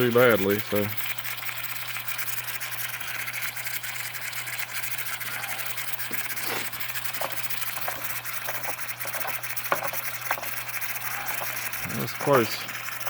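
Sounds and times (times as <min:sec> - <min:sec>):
steam hissing: 0:01.7 - 0:13.0.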